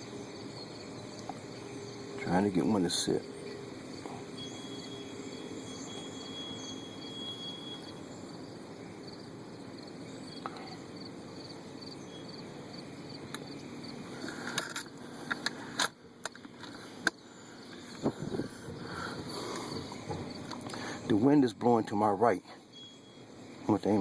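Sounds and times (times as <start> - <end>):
insects chirping: 0.0 - 24.0
low wind rumble: 18.0 - 20.4.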